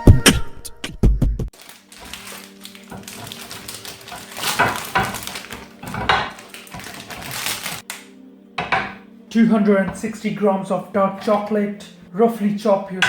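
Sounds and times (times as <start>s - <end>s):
rustling and clatter: 1.6s - 7.8s
kitchen items clicking and tapping: 2.0s - 8.0s, 8.6s - 9.0s.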